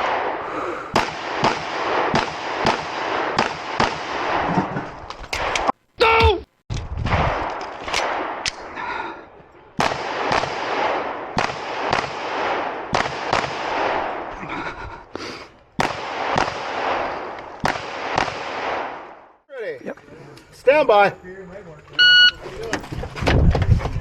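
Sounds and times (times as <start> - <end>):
pistol shots echoing: 1.0 - 4.4, 9.8 - 14.3, 15.8 - 19.2.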